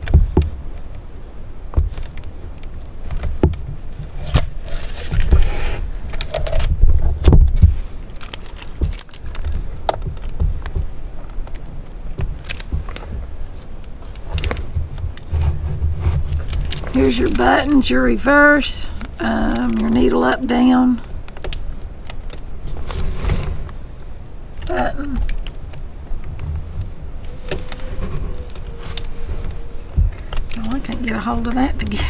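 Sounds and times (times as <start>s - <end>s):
rustling: 0.0s - 32.0s
plastic parts clicking and knocking: 6.1s - 13.3s, 14.0s - 17.8s.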